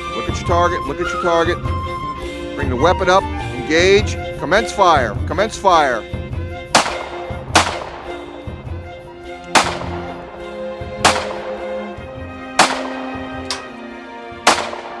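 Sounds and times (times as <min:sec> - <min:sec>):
pistol shots: 0:06.7 - 0:08.6, 0:09.5 - 0:11.9, 0:12.5 - 0:13.7, 0:14.4 - 0:15.0.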